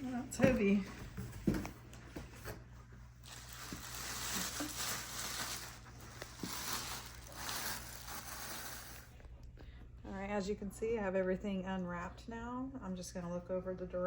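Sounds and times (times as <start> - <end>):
plastic packaging crinkling: 3.2 - 9.3.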